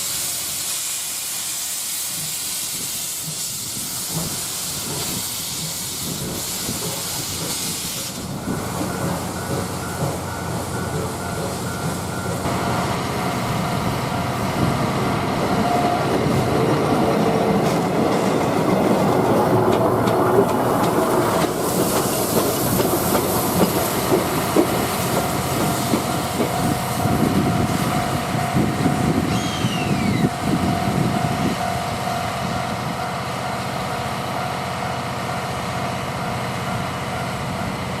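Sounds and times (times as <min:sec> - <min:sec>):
train wheels clattering over rail joints: 0:02.1 - 0:12.5, 0:16.7 - 0:29.2.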